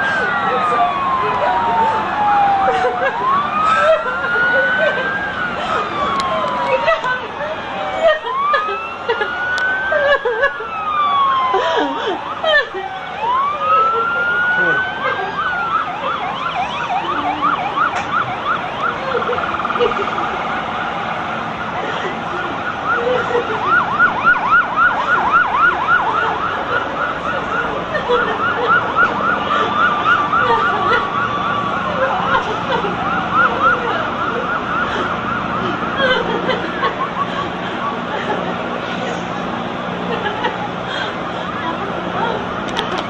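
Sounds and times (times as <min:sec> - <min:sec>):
siren wailing: 0:00.0 - 0:43.0
sirens yelping: 0:00.0 - 0:43.0.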